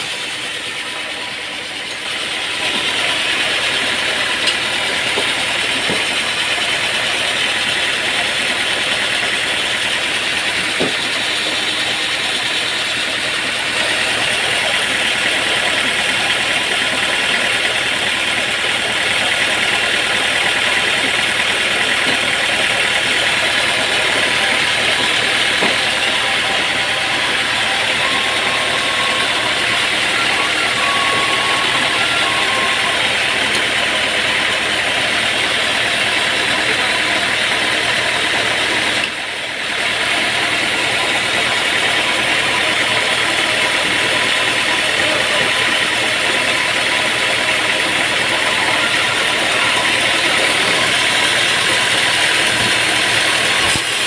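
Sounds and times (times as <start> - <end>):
sawmill machinery running: 0.0 - 54.0.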